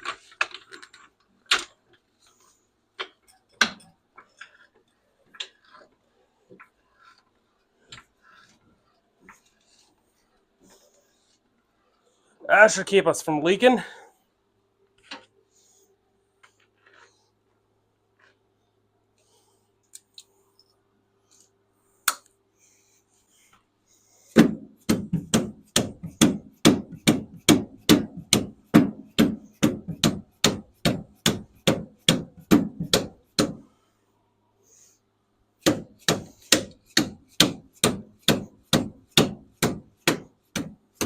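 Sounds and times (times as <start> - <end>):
rapid hammer blows: 24.3 - 33.7, 35.6 - 41.0.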